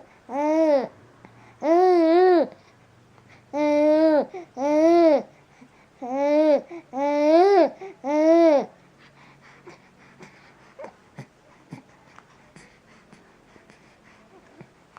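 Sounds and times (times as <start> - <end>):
baby cooing: 1.6 - 2.6, 3.6 - 5.3, 6.0 - 8.7.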